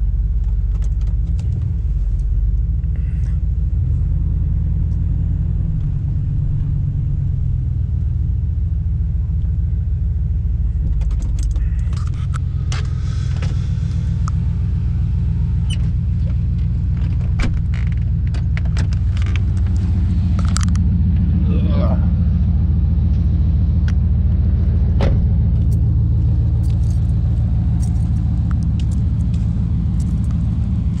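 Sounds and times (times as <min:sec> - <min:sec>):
vehicle engine rumbling: 0:00.0 - 0:31.0
clicks and rattles: 0:00.4 - 0:01.7, 0:10.8 - 0:13.0, 0:15.7 - 0:20.9, 0:26.6 - 0:31.0.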